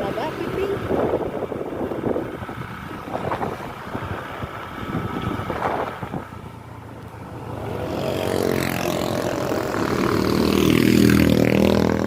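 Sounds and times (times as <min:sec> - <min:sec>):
wind buffeting microphone: 0:00.0 - 0:06.6
vehicle engine running: 0:00.0 - 0:12.0.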